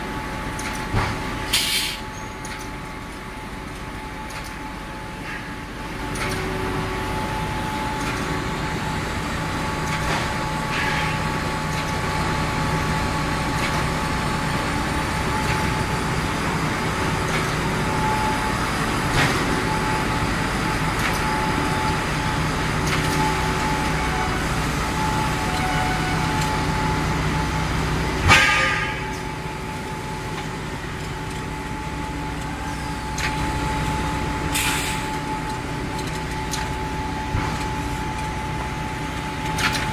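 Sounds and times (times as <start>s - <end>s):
short hiss: 1.5s - 2.0s.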